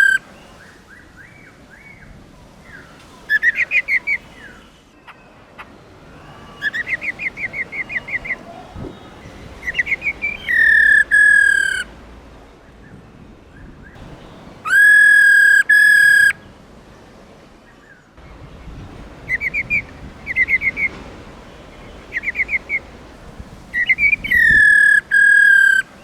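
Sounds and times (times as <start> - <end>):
bird rising call notes: 0.0 - 0.2, 6.2 - 11.9, 14.6 - 16.4, 19.2 - 21.0, 21.7 - 23.0, 23.7 - 26.0
bird long whistled notes: 6.2 - 11.9, 14.6 - 16.4, 23.8 - 25.9.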